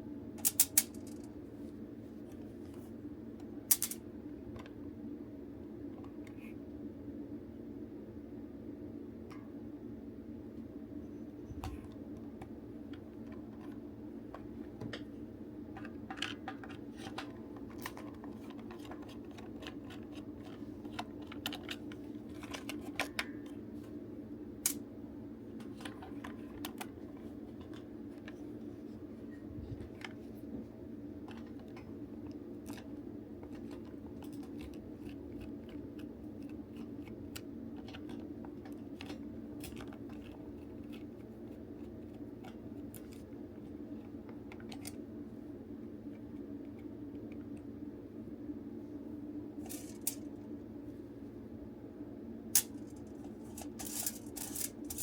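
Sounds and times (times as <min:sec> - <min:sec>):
steady low hum: 0:00.0 - 0:55.0
plastic toy parts clicking: 0:00.4 - 0:01.3, 0:03.7 - 0:04.0, 0:49.7 - 0:50.2, 0:52.6 - 0:55.0.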